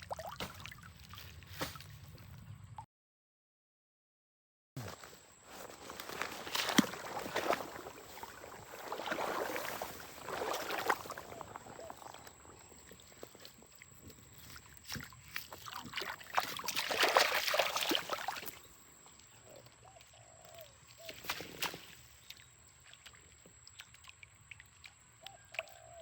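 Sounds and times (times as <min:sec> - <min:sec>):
water splashing: 0:00.0 - 0:01.8, 0:06.0 - 0:13.9, 0:14.5 - 0:19.4.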